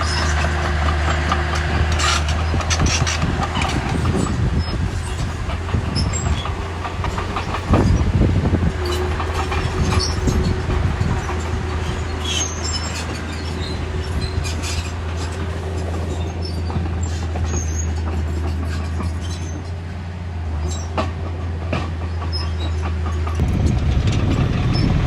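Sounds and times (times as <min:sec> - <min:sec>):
metallic clanks and rattles: 0:00.0 - 0:19.8, 0:20.6 - 0:25.0
diesel engine droning: 0:00.0 - 0:25.0.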